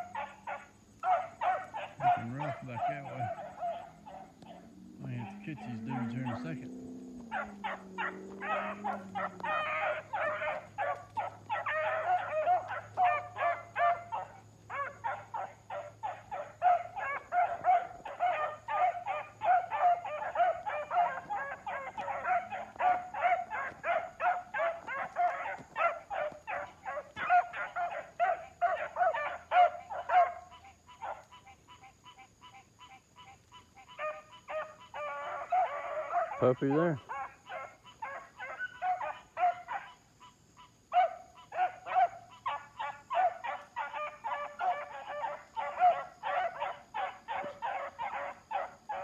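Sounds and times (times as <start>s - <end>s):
puppies barking: 0.0s - 31.4s, 33.9s - 49.0s.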